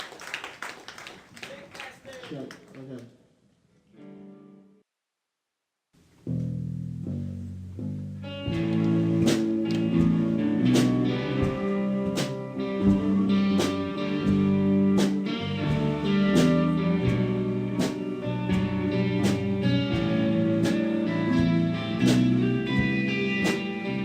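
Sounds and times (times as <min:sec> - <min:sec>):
guitar-led band music: 0:04.0 - 0:04.7, 0:07.8 - 0:24.0.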